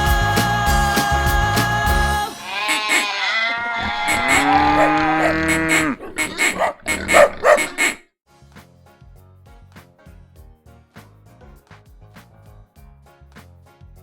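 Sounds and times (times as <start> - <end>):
cow mooing: 2.5 - 8.0.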